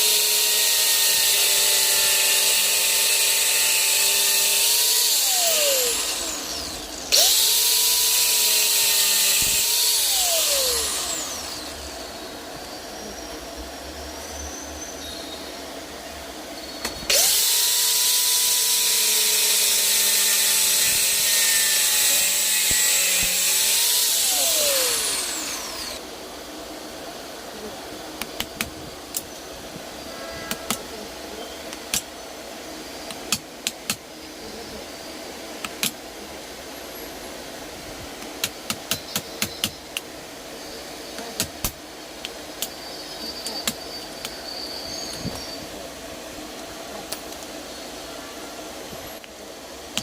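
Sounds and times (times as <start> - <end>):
cordless drill running: 0.0 - 12.1, 17.1 - 26.0.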